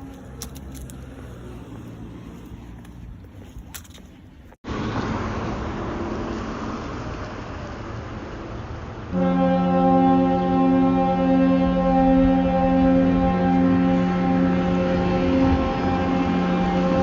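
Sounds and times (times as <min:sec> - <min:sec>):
outdoor background noise: 0:00.0 - 0:17.0
deep air horn blast: 0:09.1 - 0:17.0.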